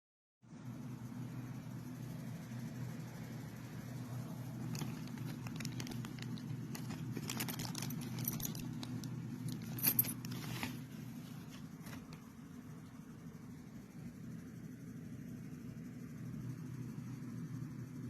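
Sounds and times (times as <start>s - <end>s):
steady low hum: 0.5s - 18.0s
objects clicking and rattling: 4.6s - 10.8s.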